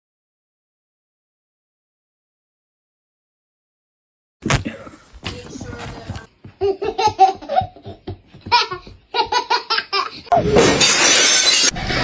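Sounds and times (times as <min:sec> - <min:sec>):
person laughing: 0:06.6 - 0:10.4.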